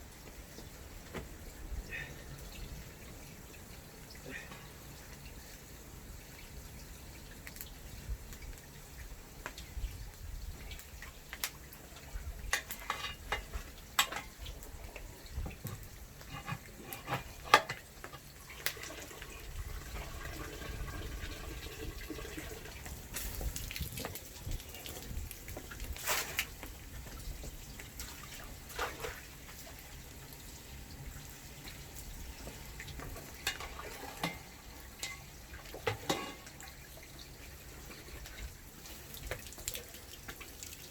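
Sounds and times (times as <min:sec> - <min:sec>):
water splashing in a sink: 0:15.5 - 0:27.0, 0:27.6 - 0:30.4, 0:32.8 - 0:40.9.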